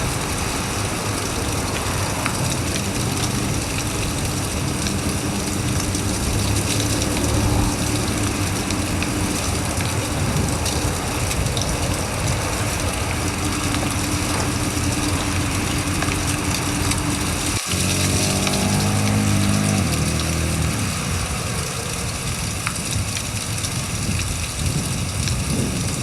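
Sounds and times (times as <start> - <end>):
vehicle engine: 0.0 - 25.6
road noise: 0.0 - 26.0.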